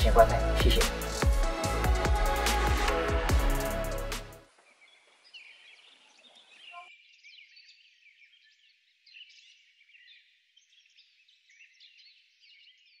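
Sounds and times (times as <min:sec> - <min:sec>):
chorus of animal chirps: 0:04.8 - 0:13.0.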